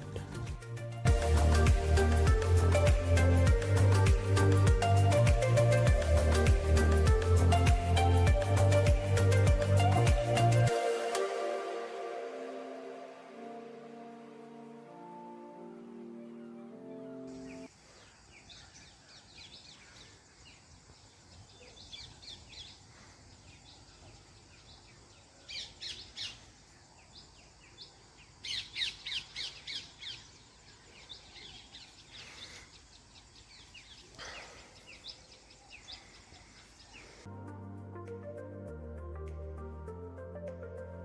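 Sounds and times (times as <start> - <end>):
birds chirping: 15.6 - 37.3.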